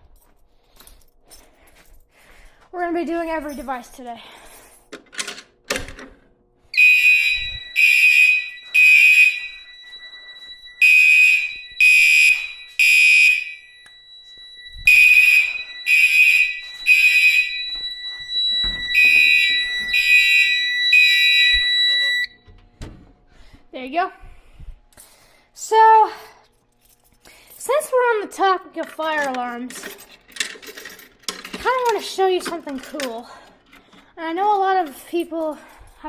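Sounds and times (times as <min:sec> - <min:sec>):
fire alarm horn blasts: 0:06.7 - 0:22.5
steady high tone: 0:06.8 - 0:22.4.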